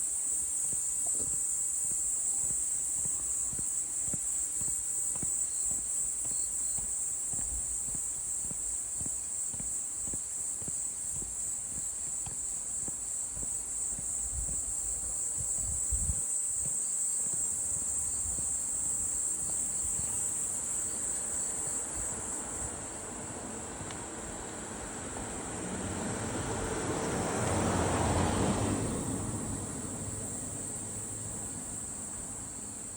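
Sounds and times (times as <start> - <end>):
footsteps on forest path: 0.0 - 22.8
crickets trilling: 0.0 - 32.9.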